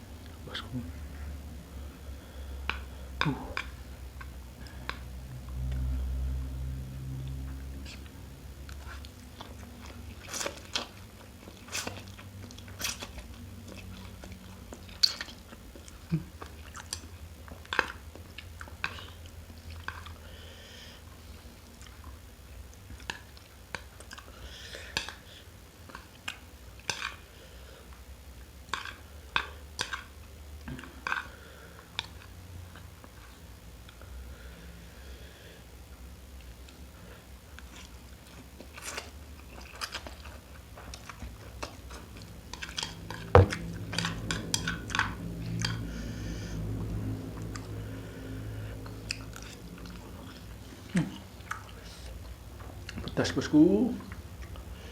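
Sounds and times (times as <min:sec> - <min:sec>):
person chewing and biting: 0:07.3 - 0:20.2, 0:37.5 - 0:45.9, 0:48.8 - 0:53.2.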